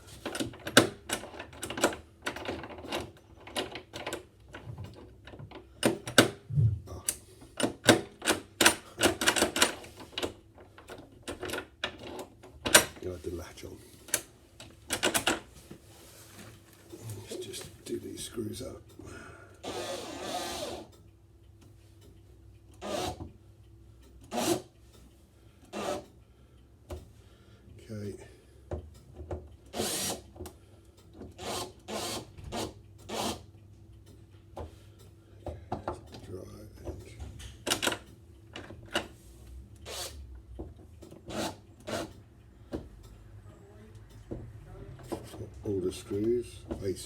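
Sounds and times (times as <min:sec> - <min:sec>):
cordless drill driving screws: 0:19.6 - 0:20.9, 0:22.8 - 0:23.2, 0:25.8 - 0:26.0, 0:29.7 - 0:30.2, 0:31.4 - 0:33.4, 0:39.9 - 0:40.2.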